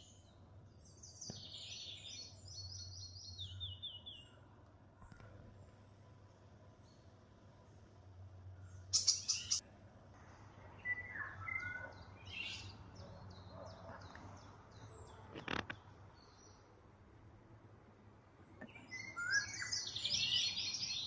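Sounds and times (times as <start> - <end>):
songbirds chirping and whistling: 0.0 - 4.5, 8.6 - 9.6, 10.6 - 16.7, 18.6 - 21.0.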